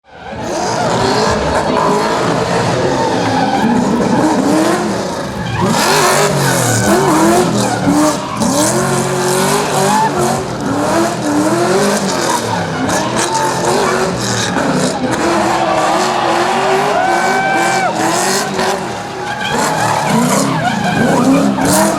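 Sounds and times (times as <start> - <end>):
car engine revving hard: 0.1 - 21.9
tyres squealing: 0.3 - 21.9.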